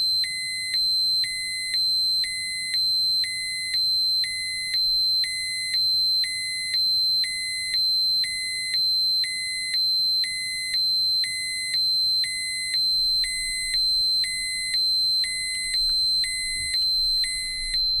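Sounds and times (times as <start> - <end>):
pulsing lower beep: 11.3 - 18.0.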